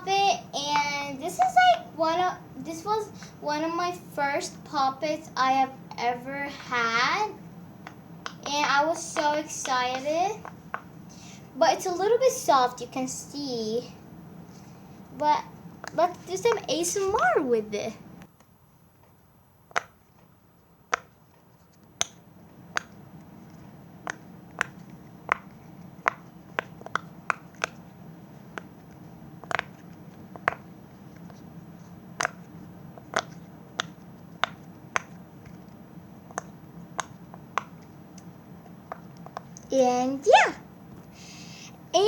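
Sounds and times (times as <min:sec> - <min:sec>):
pop-it toy bubbles popping: 0:24.0 - 0:27.8, 0:29.4 - 0:29.7, 0:32.2 - 0:35.1.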